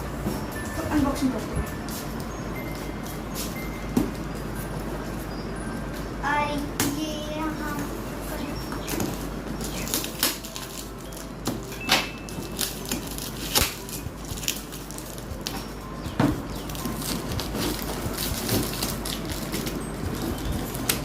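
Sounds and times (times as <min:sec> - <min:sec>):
cardboard packaging crackling: 0:08.8 - 0:21.0
packaging sharp snaps: 0:12.0 - 0:15.3.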